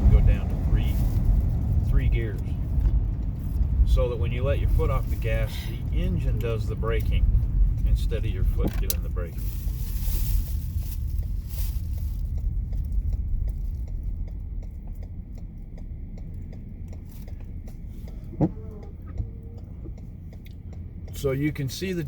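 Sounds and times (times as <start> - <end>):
car road and engine rumble: 0.0 - 22.0
faint regular ticking: 0.1 - 22.0.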